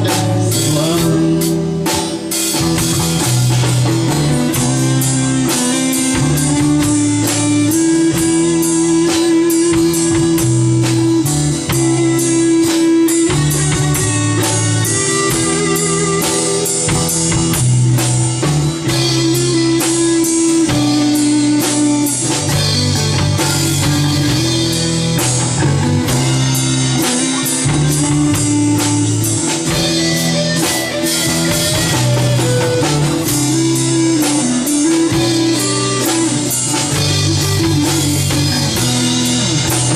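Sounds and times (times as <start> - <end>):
bass line: 0.0 - 39.9
drum kit beat: 0.0 - 39.9
guitar: 0.0 - 39.9.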